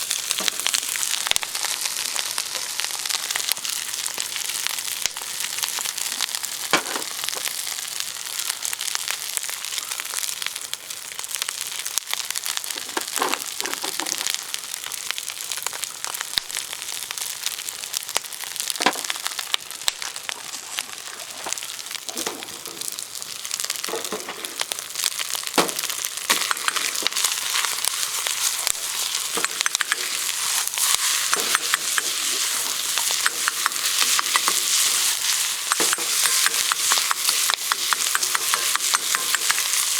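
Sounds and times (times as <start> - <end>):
rice sizzling in a wok: 0.0 - 39.9
stirring knocks and scrapes: 12.8 - 14.4, 20.5 - 23.0, 23.8 - 24.8, 25.6 - 39.9.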